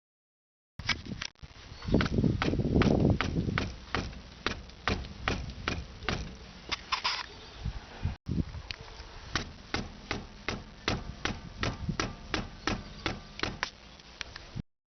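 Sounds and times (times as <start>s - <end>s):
brake pads knocking: 2.0s - 6.5s, 9.4s - 13.8s.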